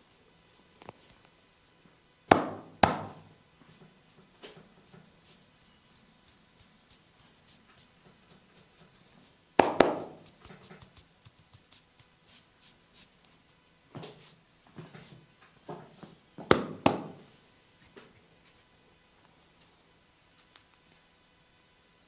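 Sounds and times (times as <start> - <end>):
sharp hand impacts: 2.3 - 3.3, 9.6 - 10.3.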